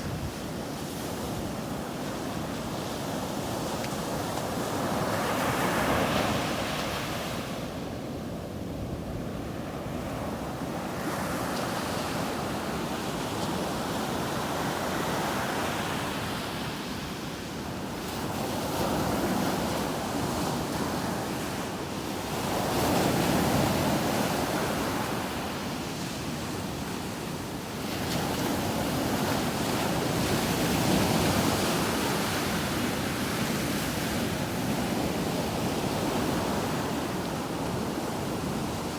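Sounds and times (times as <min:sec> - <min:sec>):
wind on microphone: 0:00.0 - 0:14.7.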